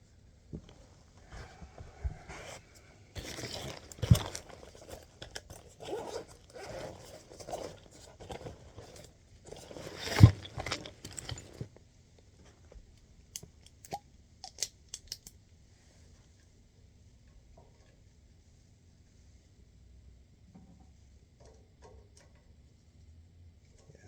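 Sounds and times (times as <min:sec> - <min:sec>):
tools clicking and scraping: 0:03.2 - 0:11.7.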